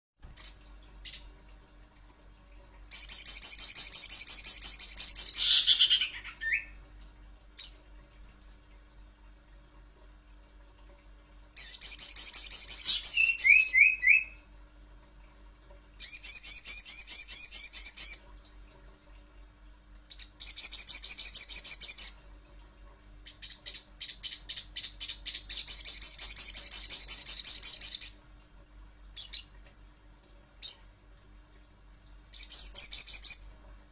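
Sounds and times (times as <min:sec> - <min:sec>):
bird high-pitched trilling: 0:03.0 - 0:06.7, 0:11.6 - 0:14.4
bird single calls: 0:05.3 - 0:06.8.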